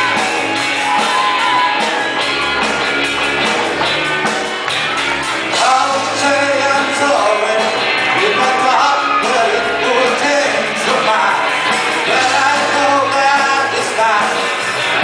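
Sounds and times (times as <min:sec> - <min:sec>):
bass guitar: 0:00.0 - 0:15.0
drums: 0:00.0 - 0:15.0
guitars: 0:00.0 - 0:15.0
person singing: 0:05.5 - 0:15.0.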